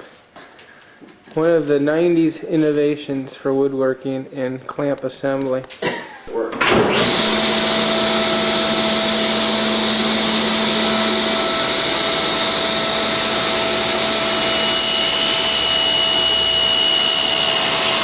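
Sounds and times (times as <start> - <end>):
electric motor running: 6.8 - 18.0
low hum: 6.9 - 18.0.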